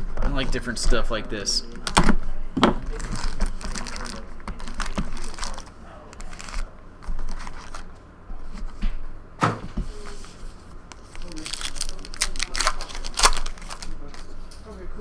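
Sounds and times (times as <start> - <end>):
cards clicking and shuffling: 1.7 - 7.9, 10.9 - 14.6
wrappers crinkling and tearing: 2.8 - 7.9, 10.9 - 14.7.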